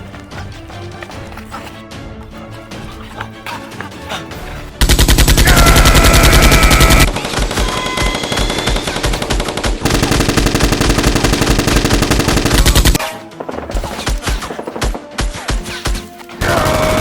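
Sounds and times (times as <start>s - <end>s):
automatic gunfire: 4.8s - 13.0s
scattered gunshots: 4.8s - 13.0s, 16.4s - 17.0s.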